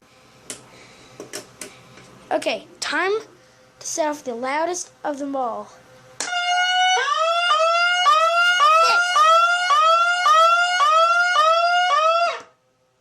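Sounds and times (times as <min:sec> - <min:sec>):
electronic alarm siren sweeping: 0:06.2 - 0:12.6.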